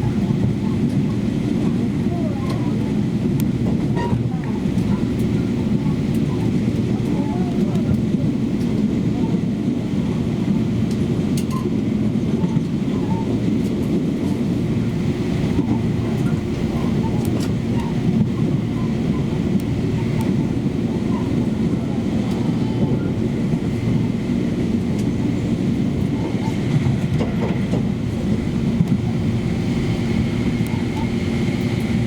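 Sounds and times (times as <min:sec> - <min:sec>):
train running rumble: 0:00.0 - 0:32.0
faint clicks of wheels on track: 0:10.8 - 0:11.8, 0:17.1 - 0:18.3.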